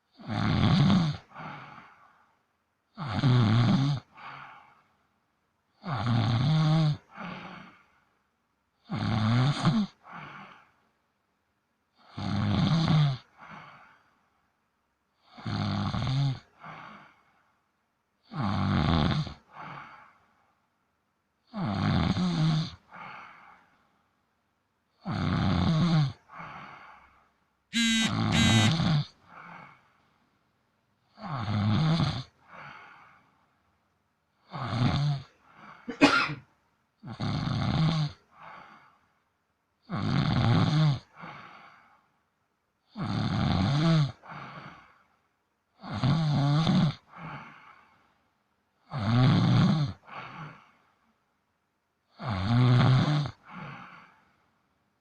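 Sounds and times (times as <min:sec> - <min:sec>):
cat snoring: 0:00.1 - 0:01.7, 0:02.9 - 0:04.1, 0:05.8 - 0:07.7, 0:08.8 - 0:09.9, 0:12.0 - 0:13.2, 0:15.2 - 0:16.4, 0:18.2 - 0:19.9, 0:21.5 - 0:22.8, 0:25.0 - 0:26.2, 0:31.2 - 0:32.3, 0:34.4 - 0:35.3, 0:37.0 - 0:38.2, 0:39.8 - 0:41.0, 0:42.9 - 0:44.7, 0:45.8 - 0:47.0, 0:48.8 - 0:50.0, 0:52.1 - 0:54.1
high whistle in snore: 0:27.8 - 0:28.8.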